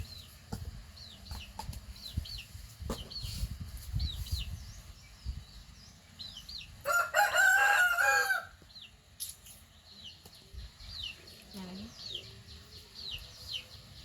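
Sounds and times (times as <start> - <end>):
small birds chirping: 0.0 - 14.0
rooster crowing: 6.8 - 8.6.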